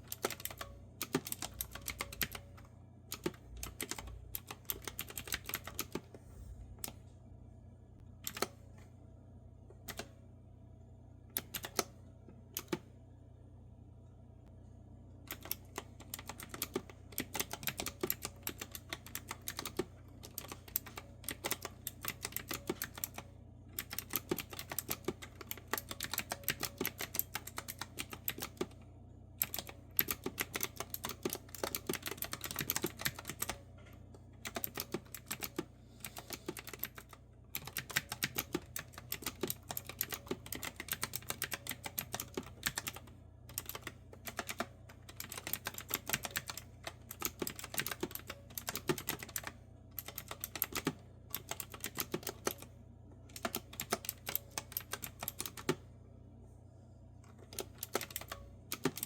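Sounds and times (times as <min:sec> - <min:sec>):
clicky keyboard typing: 0:00.0 - 0:06.1, 0:08.2 - 0:08.6, 0:09.8 - 0:10.1, 0:11.4 - 0:11.9, 0:12.6 - 0:12.9, 0:15.3 - 0:23.2, 0:23.8 - 0:28.8, 0:29.4 - 0:33.6, 0:34.4 - 0:52.7, 0:53.3 - 0:55.8, 0:57.3 - 0:59.0.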